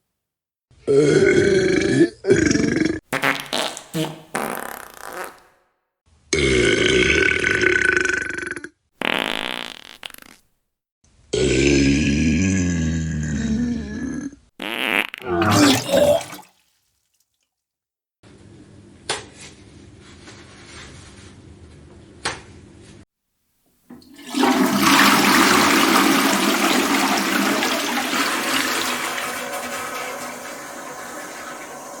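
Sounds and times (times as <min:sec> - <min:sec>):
bodily noise: 0:03.2 - 0:05.6
toilet flushing: 0:15.7 - 0:16.6, 0:23.9 - 0:32.0.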